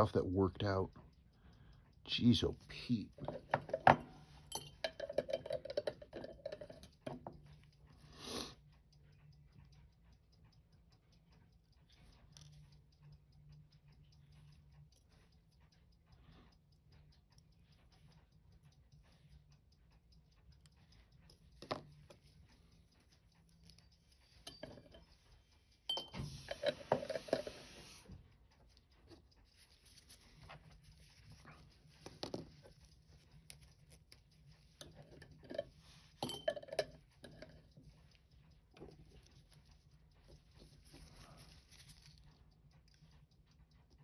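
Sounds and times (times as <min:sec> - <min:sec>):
metal tools clicking on watch parts: 0:00.0 - 0:44.0.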